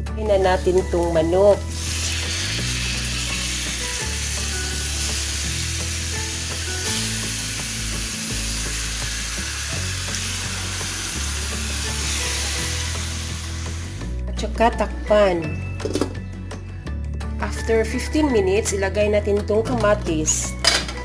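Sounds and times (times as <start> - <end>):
chicken frying in hot oil: 1.6 - 14.1.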